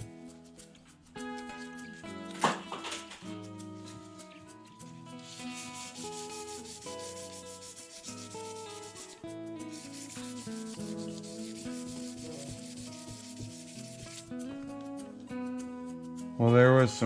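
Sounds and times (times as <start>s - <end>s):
background music: 0.0s - 17.0s
sandpaper rubbing: 5.1s - 14.5s.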